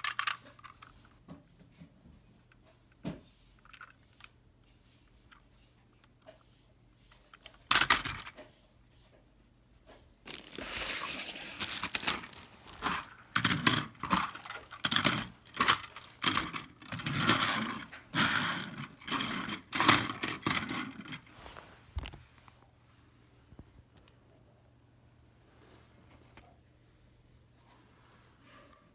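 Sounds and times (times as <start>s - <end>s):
plastic and cardboard crinkling: 10.2s - 22.5s.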